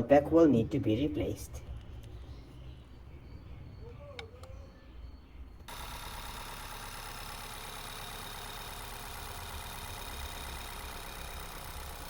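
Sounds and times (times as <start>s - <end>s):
car engine idling with misfire: 5.7s - 12.0s.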